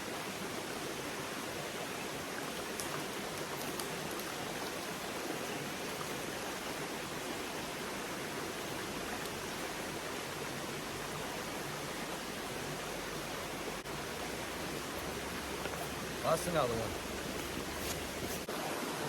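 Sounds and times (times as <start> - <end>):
stream water rushing: 0.0 - 19.0
faint ticks: 2.7 - 4.9.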